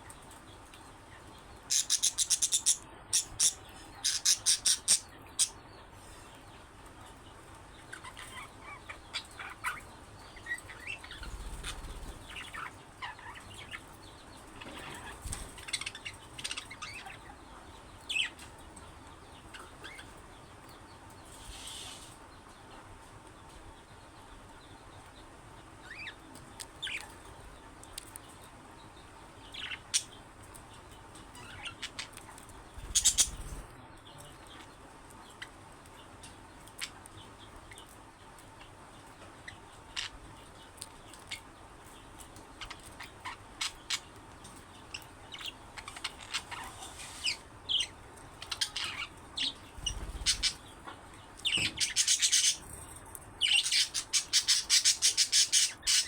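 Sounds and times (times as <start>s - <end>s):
budgerigars chirping: 1.7s - 5.7s, 7.9s - 13.9s, 31.3s - 33.6s, 44.9s - 52.7s, 53.4s - 56.0s.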